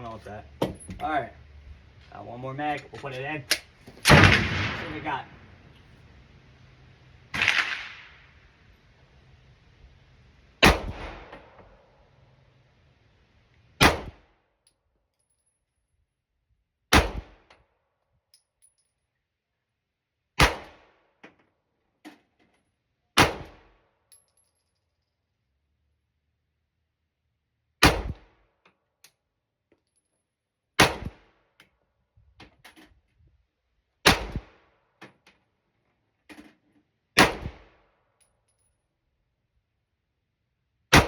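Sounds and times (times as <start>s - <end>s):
pistol shots: 4.0s - 5.4s, 7.4s - 8.2s, 10.6s - 11.3s, 13.8s - 14.2s, 16.9s - 17.4s, 20.4s - 20.8s, 23.2s - 23.6s, 27.8s - 28.2s, 30.8s - 31.2s, 34.0s - 34.5s, 37.2s - 37.6s.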